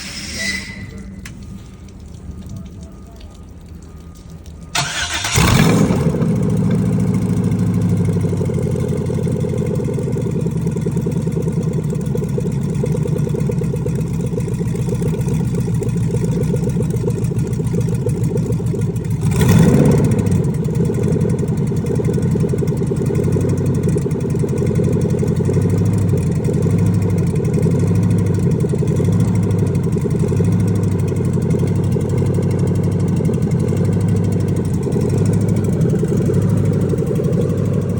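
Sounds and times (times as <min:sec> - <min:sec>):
car engine cranking and idling: 0:00.0 - 0:37.9
engine ticking: 0:00.0 - 0:37.9
engine revving: 0:04.8 - 0:11.5, 0:19.1 - 0:21.5, 0:28.9 - 0:37.9.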